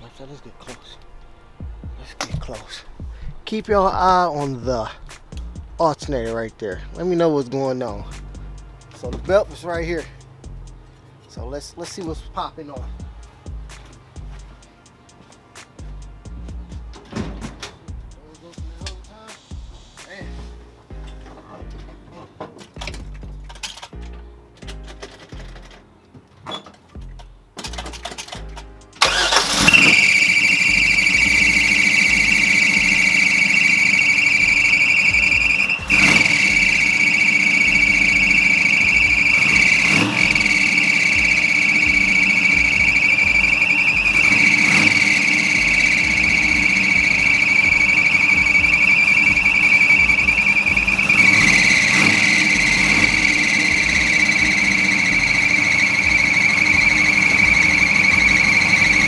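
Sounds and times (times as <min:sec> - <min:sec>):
alternator high-pitched squeal: 0:29.0 - 0:59.0
car engine running: 0:29.0 - 0:59.0.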